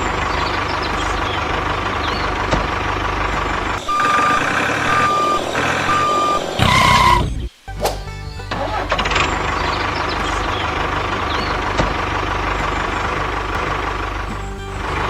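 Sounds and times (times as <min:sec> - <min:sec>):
truck engine running: 0:00.0 - 0:15.0
loud long tone: 0:03.8 - 0:07.4
reversing alarm beeping: 0:03.8 - 0:07.4.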